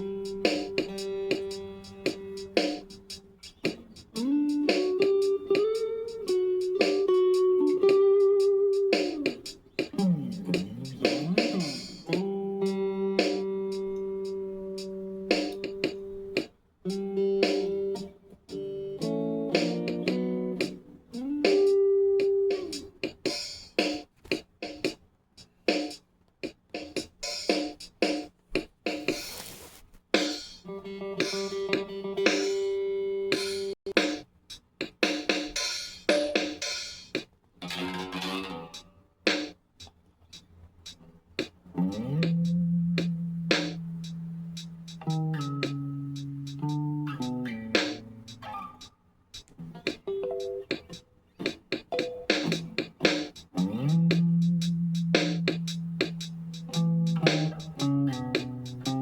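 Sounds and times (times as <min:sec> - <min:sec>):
guitar-like instrumental music: 0:00.0 - 0:24.0, 0:30.2 - 0:34.2, 0:34.8 - 0:39.6, 0:40.9 - 0:59.0
sharp percussive hits: 0:34.8 - 0:37.0.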